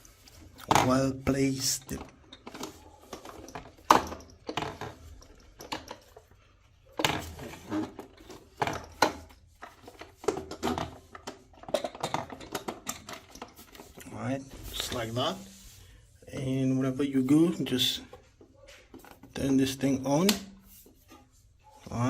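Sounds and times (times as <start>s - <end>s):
hard plastic clicks and rattles: 7.0s - 14.0s.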